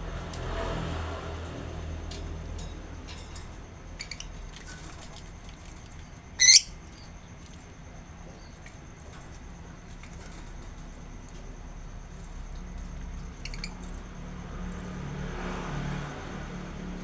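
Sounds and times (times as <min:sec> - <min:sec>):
loud wavering bird call: 0:06.4 - 0:06.8
faint bird chirps: 0:06.4 - 0:07.1, 0:13.3 - 0:13.8.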